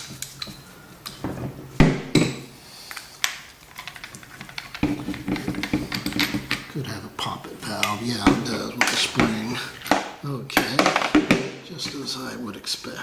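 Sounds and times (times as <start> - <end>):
sharp metallic knocks: 1.2 - 2.6, 4.5 - 12.2.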